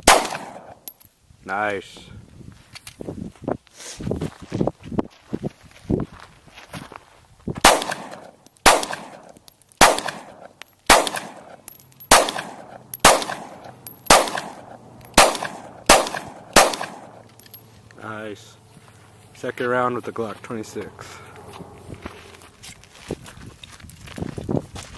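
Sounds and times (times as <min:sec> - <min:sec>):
pistol shots with echo: 0:00.0 - 0:00.8, 0:07.6 - 0:17.2.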